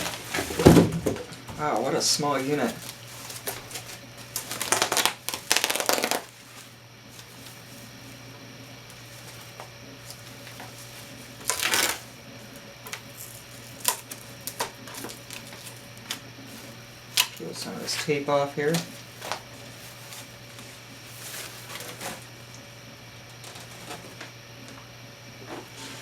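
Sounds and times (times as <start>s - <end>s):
packaging rustling and scraping: 0.0s - 8.2s, 8.9s - 22.4s, 23.4s - 24.3s, 25.4s - 26.0s.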